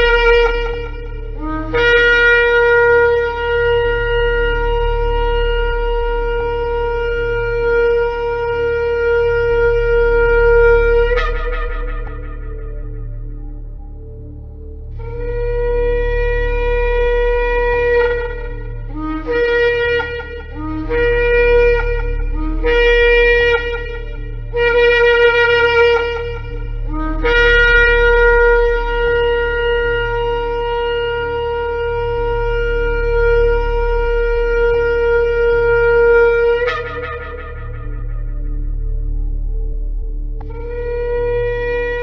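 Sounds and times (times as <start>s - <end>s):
shofar blasts: 0.0s - 14.3s, 15.0s - 42.0s
low steady drone: 0.0s - 42.0s.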